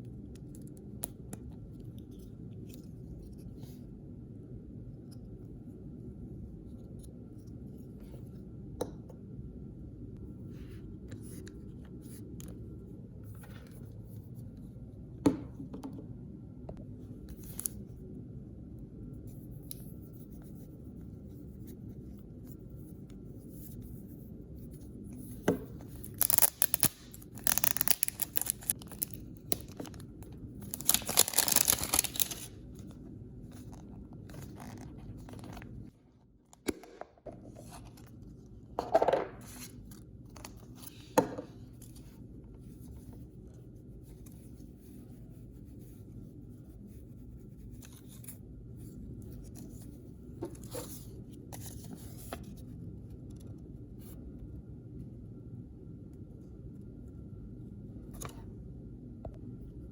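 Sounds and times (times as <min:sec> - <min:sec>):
quiet handling with sharp sounds: 0:19.1 - 0:54.4
packaging crinkling and tearing: 0:25.9 - 0:32.6.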